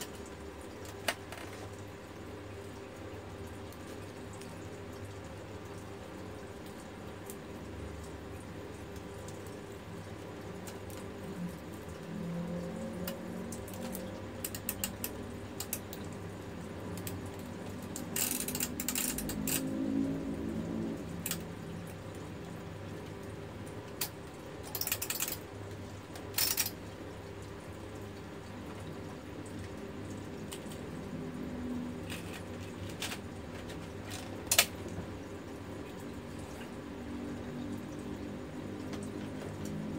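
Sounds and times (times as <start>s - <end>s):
typewriter mechanism clicking: 18.0s - 19.7s.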